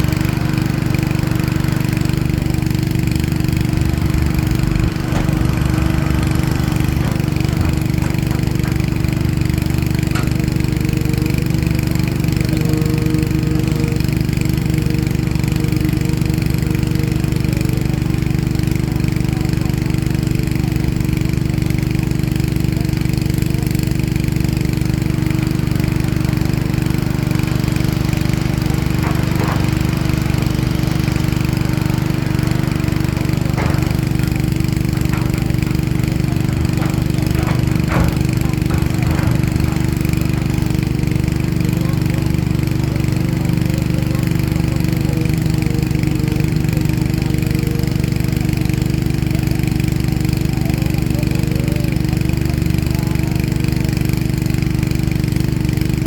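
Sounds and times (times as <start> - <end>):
faint knocks and clanks: 0.0 - 20.0, 22.8 - 51.1
heavy diesel engine running: 0.0 - 56.0.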